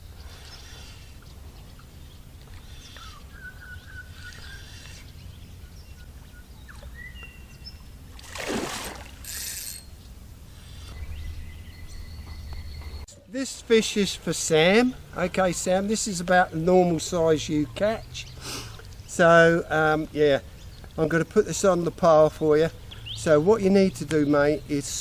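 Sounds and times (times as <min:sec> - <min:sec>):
whistled bird calls: 0:02.7 - 0:05.1, 0:05.7 - 0:07.8
low rumble: 0:10.7 - 0:13.1.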